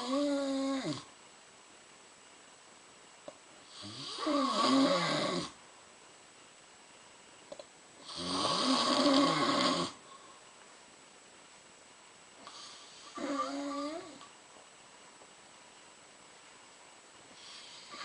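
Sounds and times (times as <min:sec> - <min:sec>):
woman snoring: 0:00.0 - 0:01.1, 0:03.7 - 0:05.6, 0:08.0 - 0:10.0, 0:12.4 - 0:14.3, 0:17.4 - 0:18.0.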